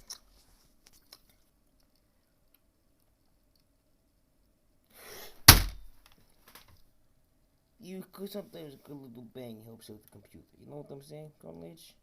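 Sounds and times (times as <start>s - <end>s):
hand thumping laptop: 5.5s - 5.9s.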